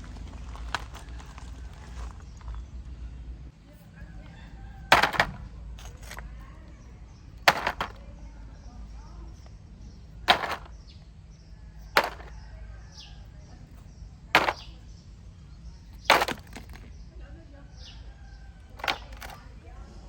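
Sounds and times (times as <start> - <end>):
sharp knocks: 4.9 - 5.4, 7.5 - 8.0, 10.3 - 10.7, 12.0 - 12.3, 14.4 - 14.7, 16.1 - 16.8, 18.8 - 19.3.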